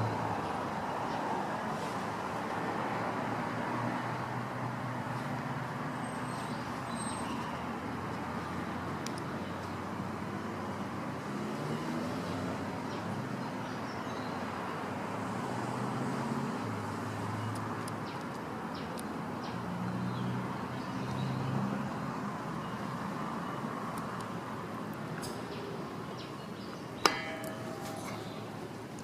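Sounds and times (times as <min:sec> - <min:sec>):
passing car engines: 0:09.8 - 0:13.4, 0:14.7 - 0:18.0.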